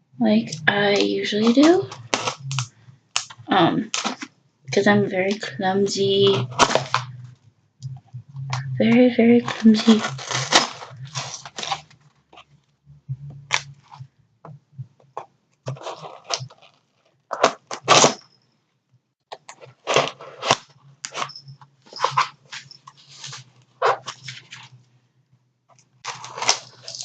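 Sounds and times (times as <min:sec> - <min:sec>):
box scraping and crinkling: 0:09.4 - 0:11.9, 0:19.6 - 0:24.7, 0:26.1 - 0:27.0.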